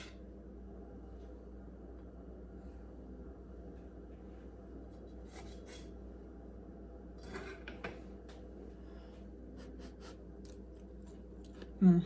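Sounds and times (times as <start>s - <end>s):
low room hum: 0.0s - 12.0s
cutlery scraping on a plate: 7.2s - 7.7s.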